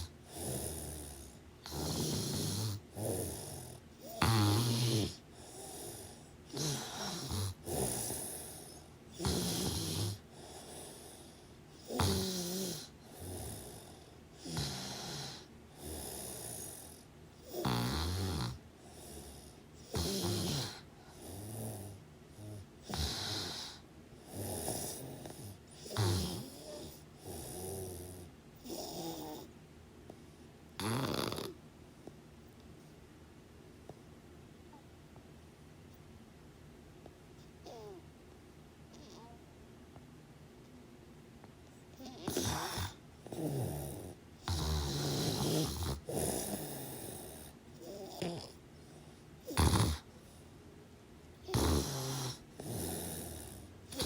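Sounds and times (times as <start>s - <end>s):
person snoring: 0.0s - 29.5s, 30.8s - 31.6s, 42.0s - 48.6s, 49.4s - 50.1s, 51.4s - 54.0s
quiet breathing: 0.0s - 33.1s, 41.4s - 54.0s.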